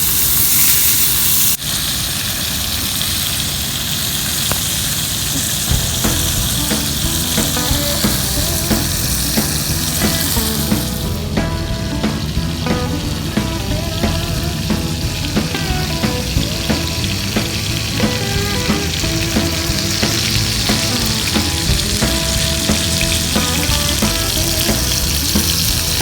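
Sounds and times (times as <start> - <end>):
bacon sizzling in a skillet: 0.0 - 26.0
background music with a beat: 5.7 - 26.0.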